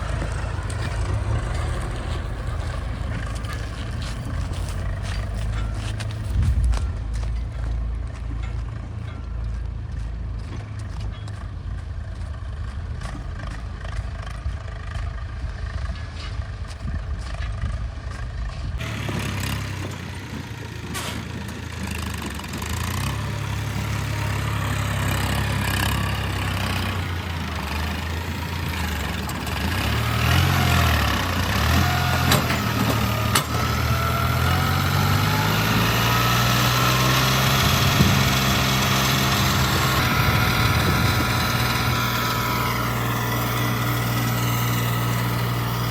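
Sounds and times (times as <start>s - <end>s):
diesel machinery engine revving: 0.0s - 45.9s.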